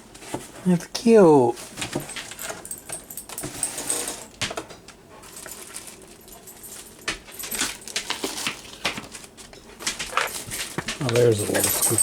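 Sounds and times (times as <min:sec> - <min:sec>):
packaging rustling: 0:05.2 - 0:12.0.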